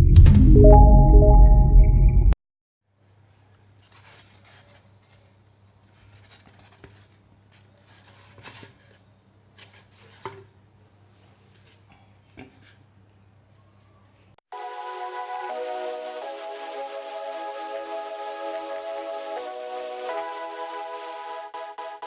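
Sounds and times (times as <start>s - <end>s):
hand handling clicks and rubs: 3.5s - 10.5s, 11.2s - 12.8s.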